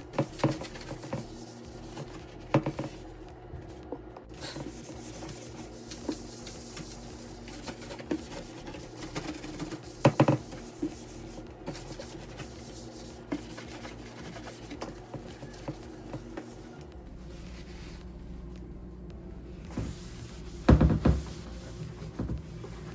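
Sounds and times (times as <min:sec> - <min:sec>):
items clicking and knocking: 0:00.0 - 0:03.1, 0:03.8 - 0:16.6
scrubbing a refrigerator: 0:00.0 - 0:18.0, 0:19.7 - 0:22.9.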